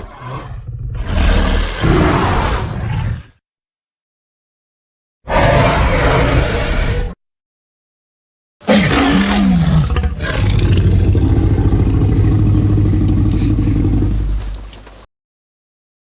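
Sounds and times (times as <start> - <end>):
monster roar: 0.0 - 3.4, 5.3 - 7.2, 8.6 - 14.4
monster cry: 8.6 - 14.2
low drone: 10.6 - 14.6.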